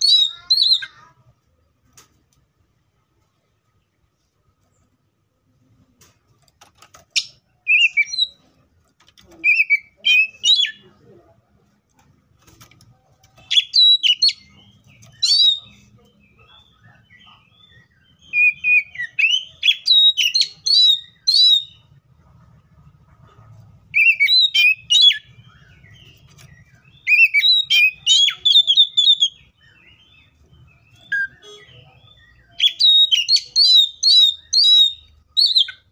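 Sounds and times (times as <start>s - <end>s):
bird singing whistled notes: 7.2s - 8.4s, 13.5s - 21.9s, 23.9s - 35.9s.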